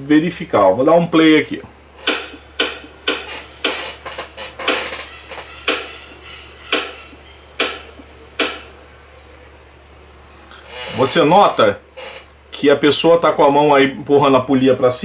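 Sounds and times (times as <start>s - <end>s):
pulley clacking: 2.0s - 8.7s.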